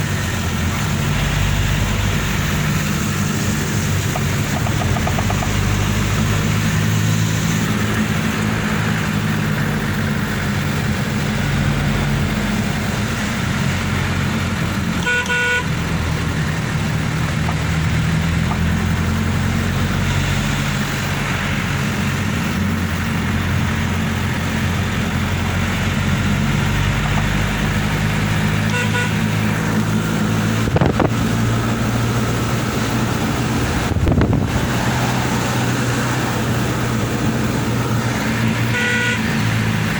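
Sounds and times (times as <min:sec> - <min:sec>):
vehicle engine running: 0:00.0 - 0:39.9.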